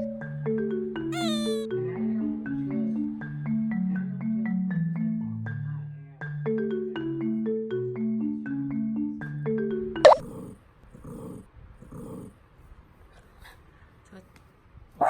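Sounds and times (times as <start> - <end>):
light marimba music: 0.0 - 10.6
dog grumbling: 10.1 - 12.4.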